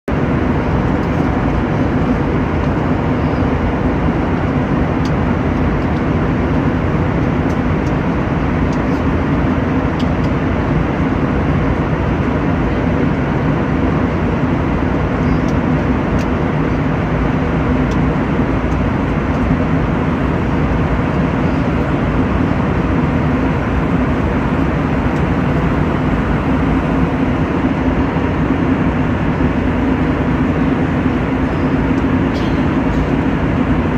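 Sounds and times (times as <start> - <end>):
ship engine droning: 0.1 - 33.9.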